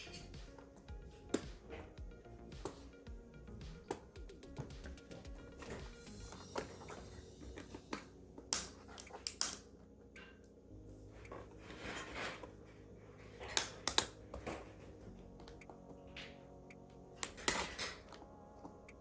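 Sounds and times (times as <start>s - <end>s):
plastic clicks and snaps: 7.9s - 9.7s, 13.5s - 14.6s.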